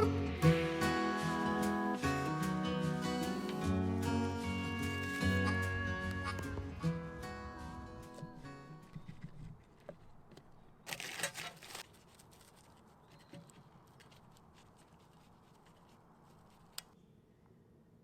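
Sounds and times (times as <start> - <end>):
brief rustle: 8.1 - 17.0
faint handling noises: 8.1 - 17.1.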